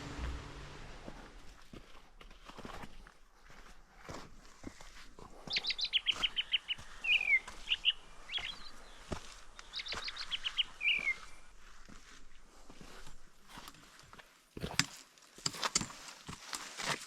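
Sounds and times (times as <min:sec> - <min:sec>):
footsteps crunching on trail: 0:00.0 - 0:17.0
songbird singing: 0:05.4 - 0:11.6.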